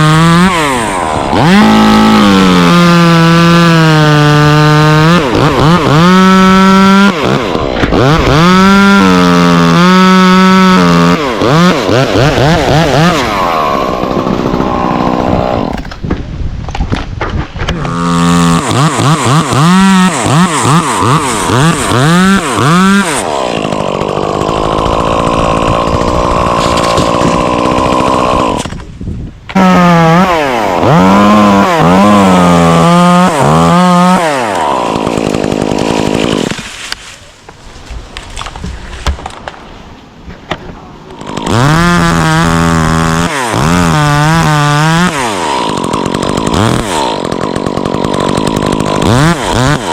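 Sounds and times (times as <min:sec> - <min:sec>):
chainsaw revving: 0:00.0 - 0:16.0, 0:17.7 - 0:28.8, 0:29.5 - 0:37.2, 0:41.0 - 0:49.9.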